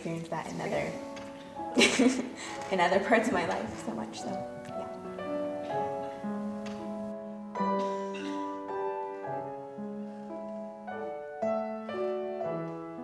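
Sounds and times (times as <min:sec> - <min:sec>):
slow gentle piano music: 0:00.0 - 0:13.0.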